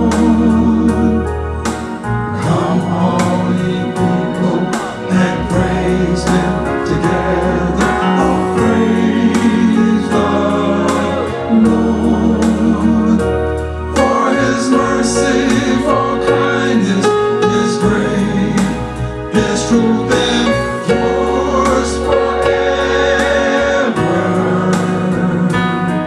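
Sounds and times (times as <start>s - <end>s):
keyboard with steady beat: 0.0s - 26.0s
voices singing gospel: 0.0s - 26.0s.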